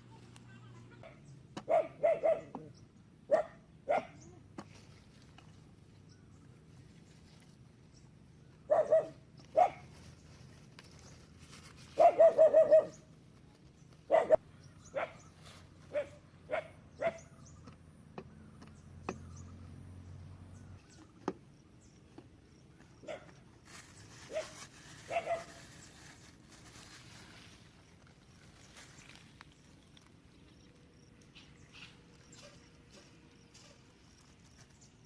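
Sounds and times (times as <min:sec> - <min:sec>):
dog barking in short yaps: 0:12.0 - 0:13.0.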